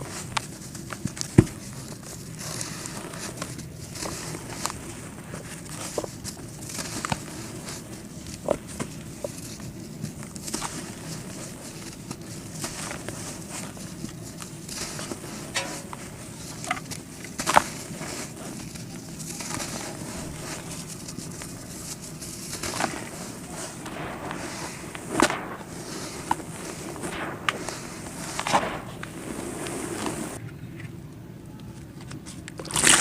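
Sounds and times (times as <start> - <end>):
dirt clumps crumbling and crunching: 0.0 - 30.4.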